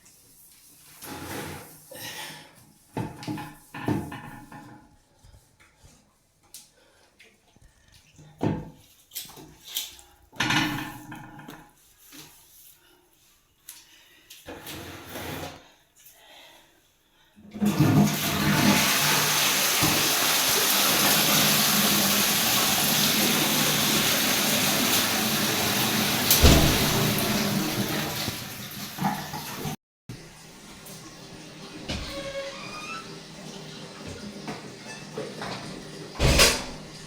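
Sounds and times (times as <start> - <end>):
water rushing loudly: 18.4 - 28.8.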